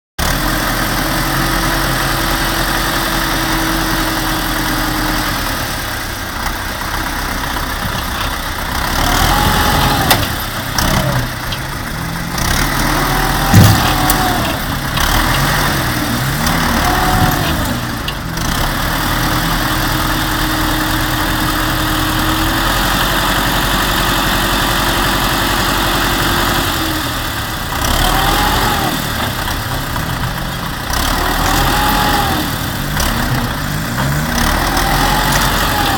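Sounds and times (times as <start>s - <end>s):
vehicle engine revving: 8.6s - 20.2s, 30.8s - 35.9s.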